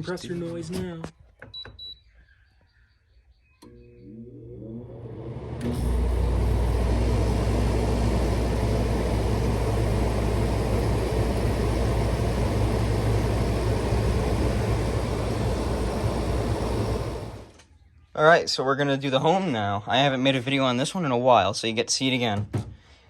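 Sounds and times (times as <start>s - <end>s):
air conditioner compressor hum: 3.8s - 17.6s
air conditioner fan rushing: 4.5s - 17.6s.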